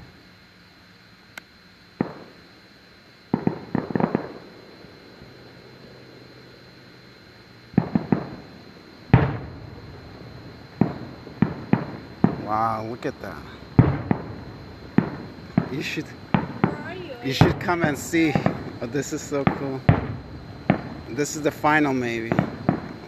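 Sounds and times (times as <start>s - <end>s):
fireworks bangs and pops: 2.0s - 2.4s, 3.3s - 4.4s, 7.7s - 8.5s, 9.1s - 23.0s
fireworks boom: 7.7s - 8.5s, 9.1s - 23.0s.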